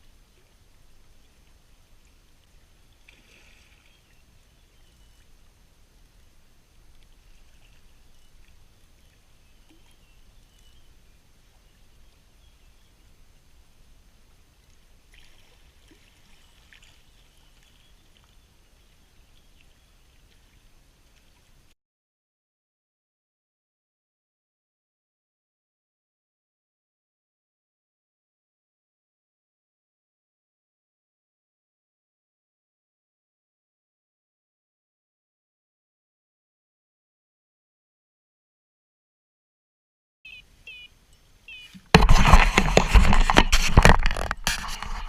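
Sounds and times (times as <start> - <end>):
water splashing: 0.0 - 10.8, 14.6 - 21.7, 41.5 - 45.0
faint water sounds: 0.0 - 21.8, 40.3 - 45.0.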